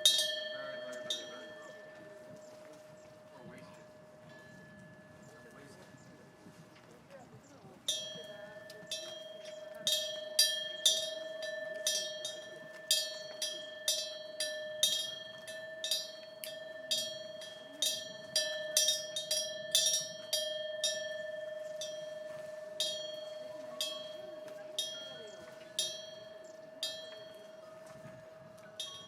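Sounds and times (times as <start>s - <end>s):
wind chime ringing: 0.0s - 6.6s, 7.8s - 29.0s.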